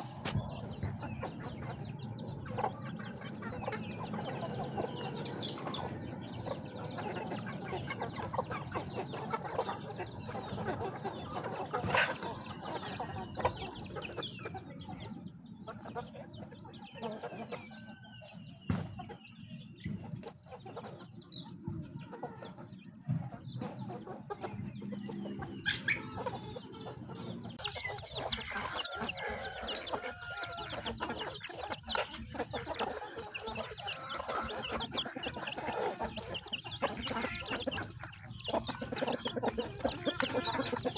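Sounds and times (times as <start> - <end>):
chickens clucking: 0.0 - 40.9
chickens pecking clicks: 27.6 - 40.7.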